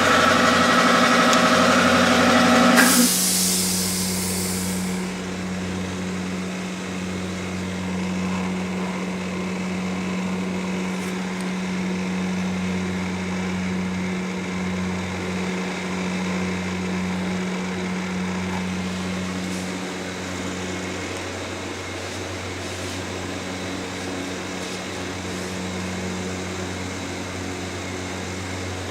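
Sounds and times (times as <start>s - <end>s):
mechanical hum: 0.0s - 28.9s.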